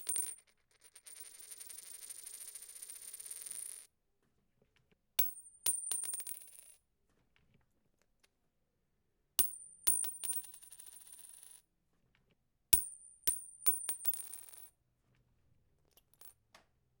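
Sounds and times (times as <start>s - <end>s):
coin dropping on hard surface: 0.0s - 3.9s, 5.2s - 6.8s, 9.4s - 11.6s, 12.8s - 14.7s, 15.9s - 16.4s.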